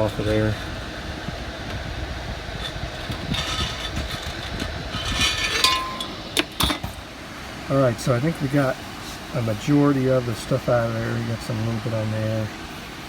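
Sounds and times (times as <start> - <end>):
metal scraped on sandpaper: 2.5 - 6.3.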